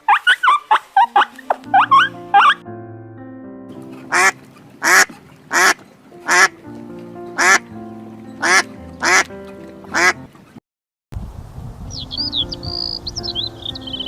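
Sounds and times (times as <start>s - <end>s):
duck quacking: 0.0s - 2.6s, 4.1s - 6.6s, 7.4s - 7.6s, 8.4s - 9.3s, 9.9s - 10.3s
background music: 0.6s - 10.4s, 12.2s - 14.0s.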